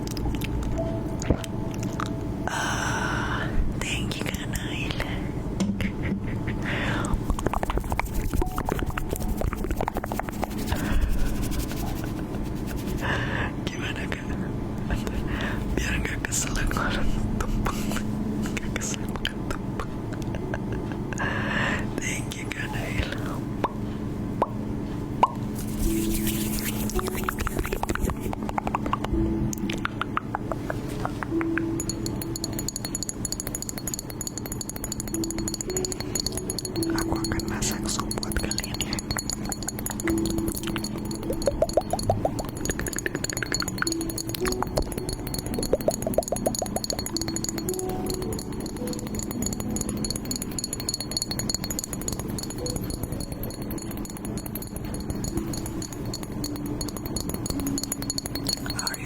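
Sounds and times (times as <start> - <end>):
low steady hum: 0.0 - 59.0
rapid light clinking: 31.8 - 59.0.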